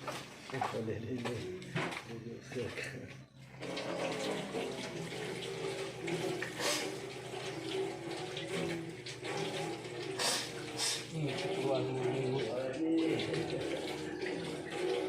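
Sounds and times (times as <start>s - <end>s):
tap water running into sink: 0.0s - 15.0s
louder water splashes: 3.6s - 15.0s.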